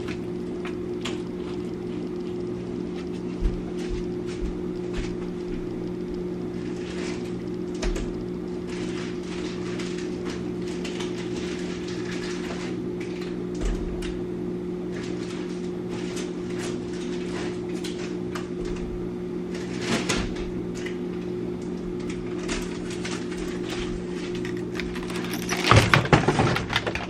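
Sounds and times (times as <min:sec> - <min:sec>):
low electrical hum: 0:00.0 - 0:27.0
things being handled and set down: 0:22.4 - 0:27.0.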